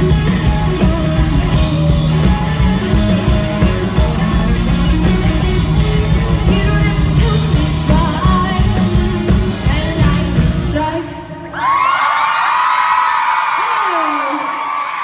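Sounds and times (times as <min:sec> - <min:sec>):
pop-rock band playing live: 0:00.0 - 0:11.4
lead singer singing: 0:00.0 - 0:11.7.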